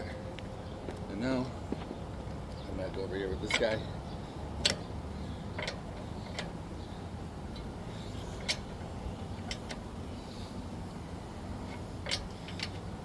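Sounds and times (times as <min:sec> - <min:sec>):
low outdoor rumble: 0:00.0 - 0:13.0.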